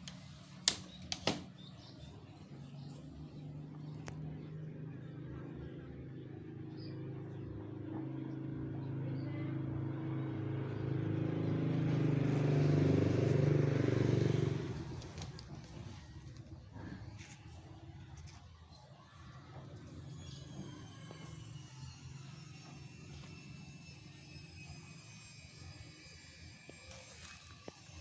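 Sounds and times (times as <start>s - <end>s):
vehicle engine passing by: 1.8s - 18.4s.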